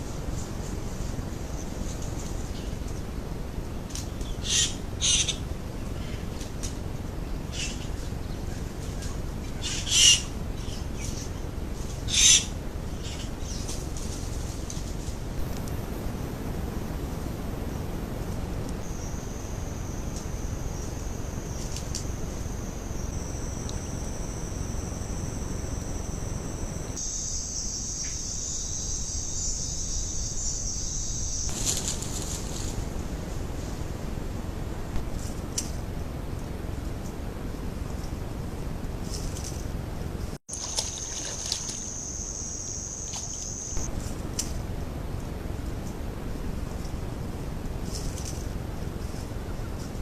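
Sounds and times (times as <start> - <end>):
steady low rumble: 0.0 - 27.0
crickets trilling: 0.0 - 35.6, 40.2 - 45.4
bird calling: 4.1 - 6.4, 7.3 - 13.8.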